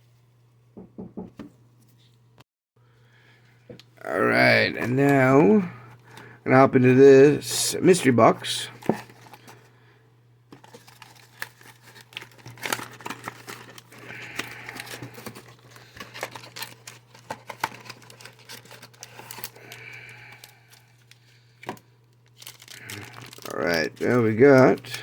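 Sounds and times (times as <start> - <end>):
packaging crinkling and tearing: 7.6 - 9.6, 10.5 - 25.0.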